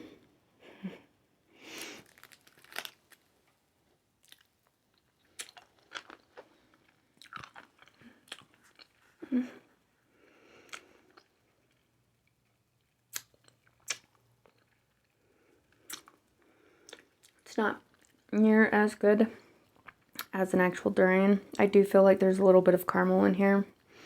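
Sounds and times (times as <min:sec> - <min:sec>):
person chewing candy: 0:01.7 - 0:03.3, 0:04.2 - 0:09.6, 0:10.5 - 0:18.3, 0:19.6 - 0:20.4
wet mouth clicks and smacks: 0:13.1 - 0:14.2, 0:15.9 - 0:16.2.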